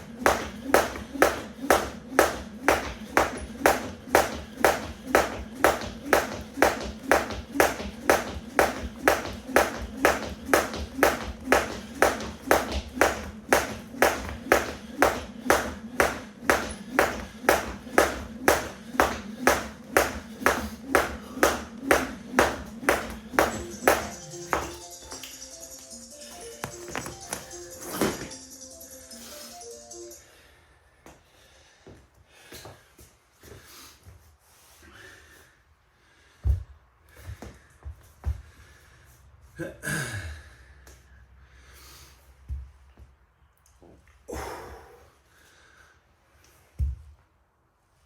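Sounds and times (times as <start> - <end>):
jump rope slapping floor: 0.0 - 25.4, 26.6 - 28.4.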